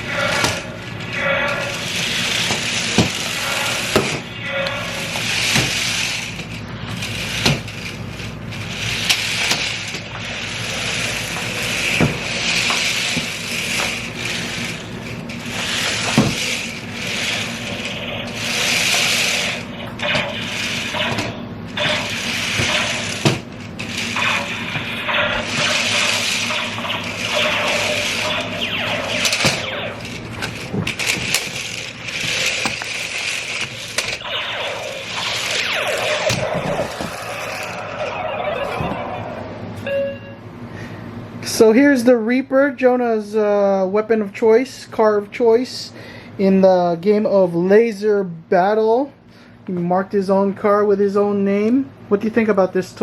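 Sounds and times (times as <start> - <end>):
toy tank motors whirring: 0.0 - 37.9.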